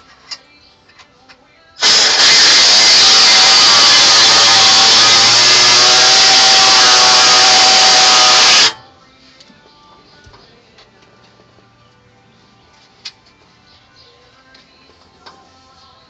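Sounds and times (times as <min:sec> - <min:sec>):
air grinder running: 0:01.8 - 0:08.8.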